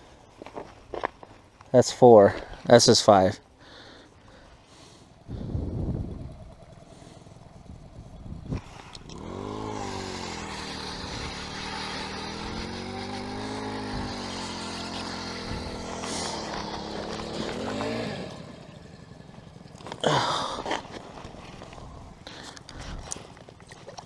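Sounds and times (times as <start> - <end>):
power ice auger motor: 4.8 - 23.2.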